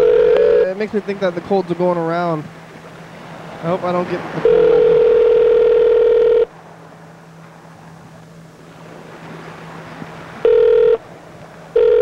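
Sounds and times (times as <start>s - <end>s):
telephone ringback tone: 0.0s - 0.7s, 4.4s - 6.5s, 10.4s - 11.0s, 11.8s - 12.0s
phone line hiss and hum: 0.0s - 0.8s, 4.4s - 6.5s, 10.4s - 11.1s, 11.7s - 12.0s.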